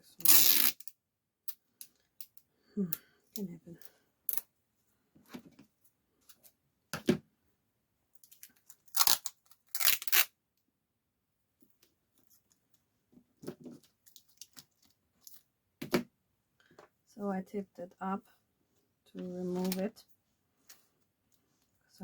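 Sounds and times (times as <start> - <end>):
sticky tape pulled and torn: 0.2 - 1.0, 8.9 - 10.4.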